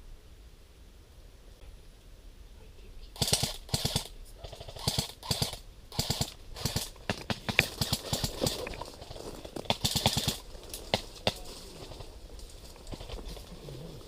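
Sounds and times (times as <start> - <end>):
airsoft gun bursts: 3.2 - 8.7, 9.6 - 11.4.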